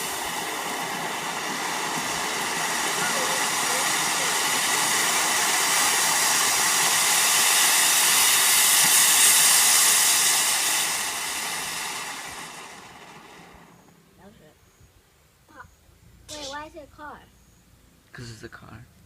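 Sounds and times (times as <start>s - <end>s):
firework fountain hissing: 0.0s - 14.4s, 16.3s - 16.9s.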